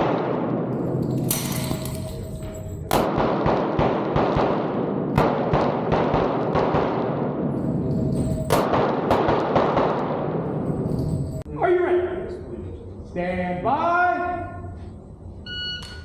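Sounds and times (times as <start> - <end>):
pistol shots: 0.0 - 2.1, 2.9 - 7.6, 8.4 - 10.6.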